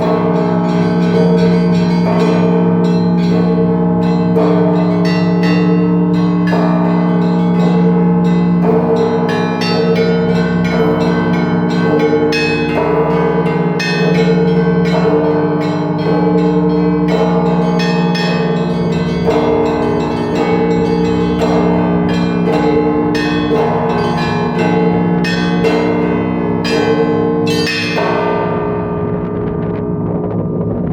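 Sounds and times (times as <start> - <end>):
large bells ringing: 0.0 - 30.9
small bells struck quickly: 13.7 - 30.0.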